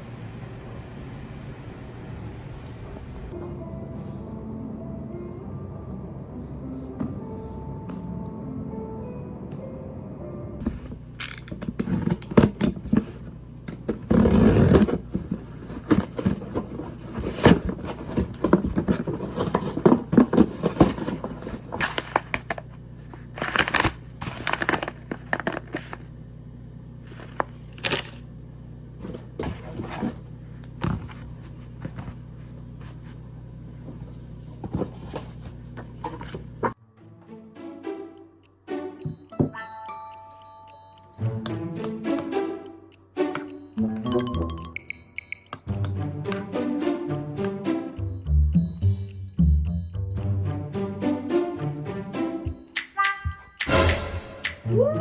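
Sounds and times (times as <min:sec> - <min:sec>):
rustling: 0:11.8 - 0:26.0.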